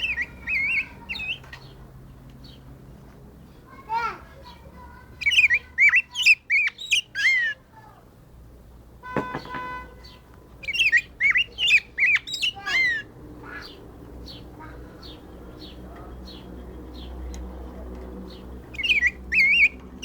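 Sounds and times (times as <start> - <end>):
bird whistled song: 0.0 - 1.7, 5.2 - 7.6, 9.4 - 13.1, 18.7 - 19.8.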